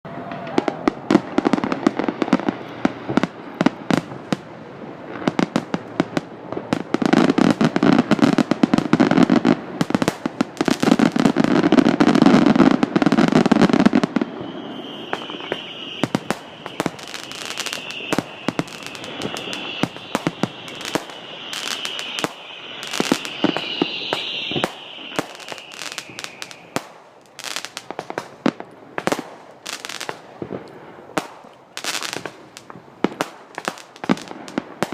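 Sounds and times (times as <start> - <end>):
fireworks bangs and crackles: 0.1 - 34.9
high-pitched tone: 14.7 - 26.6.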